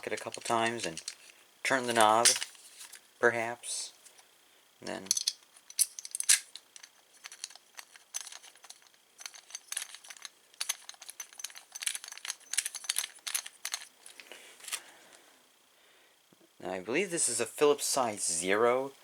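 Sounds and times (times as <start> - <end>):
metal parts and screws clinking: 0.0 - 3.0, 4.9 - 14.9.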